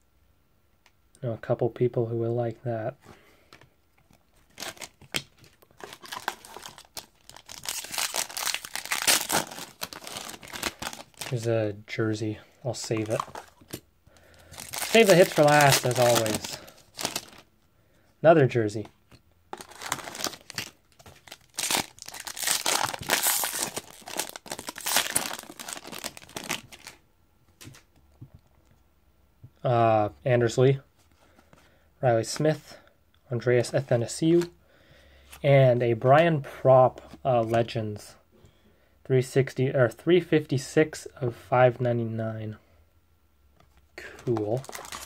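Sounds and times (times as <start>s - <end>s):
wrapper crinkling and tearing: 4.5s - 11.5s, 12.8s - 13.8s, 14.4s - 17.5s, 19.5s - 27.0s, 44.2s - 45.0s.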